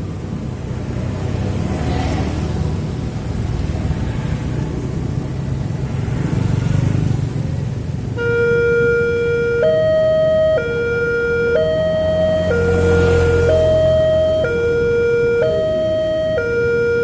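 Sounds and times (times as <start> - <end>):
road vehicles rumbling: 0.0 - 17.0
level crossing warning alarm: 8.2 - 17.0.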